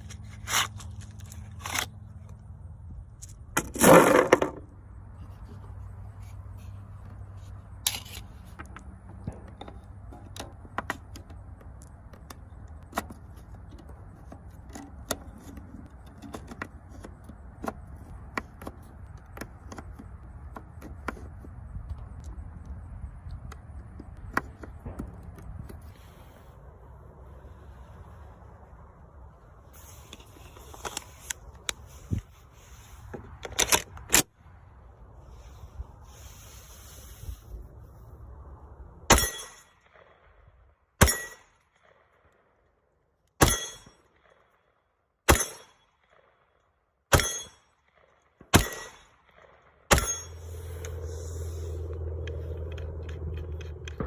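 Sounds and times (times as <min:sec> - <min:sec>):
gun handling clicks and scraping: 0:00.0 - 0:22.4, 0:29.7 - 0:34.4, 0:47.4 - 0:54.0
pistol shots: 0:48.5 - 0:49.1.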